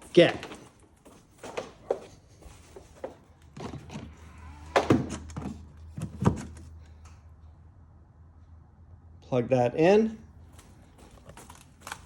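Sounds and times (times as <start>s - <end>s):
hollow plastic clunks: 4.8s - 6.7s.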